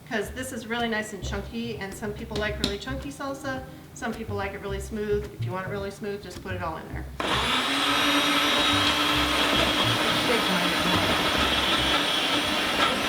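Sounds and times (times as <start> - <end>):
blender motor whining: 7.2 - 13.0.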